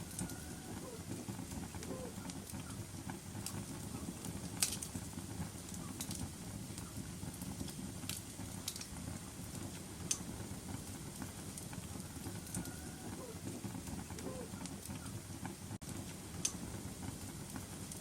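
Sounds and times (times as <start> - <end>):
fire flames rumbling: 0.0 - 18.0
fire popping sharply: 0.0 - 18.0.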